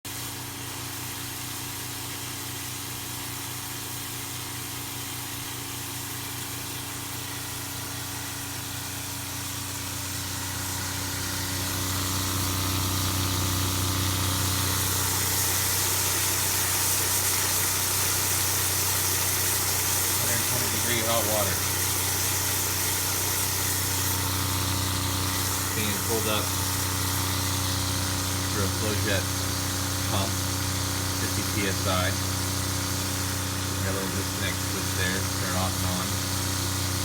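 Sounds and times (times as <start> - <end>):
rushing hiss of water heater: 0.1 - 37.0
water pump humming: 0.1 - 37.0.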